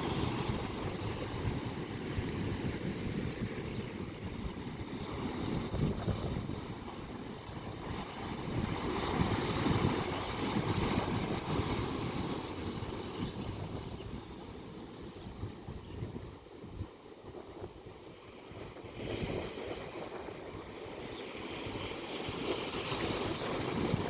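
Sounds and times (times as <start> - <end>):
ocean waves washing in: 0.0 - 13.4
wind buffeting microphone: 0.0 - 24.0.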